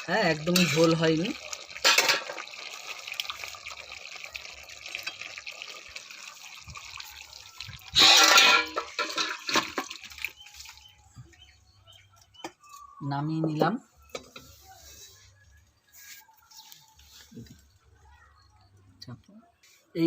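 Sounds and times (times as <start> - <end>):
curry hissing and bubbling: 0.0 - 11.0
pot clattering: 0.2 - 3.0, 7.8 - 10.4.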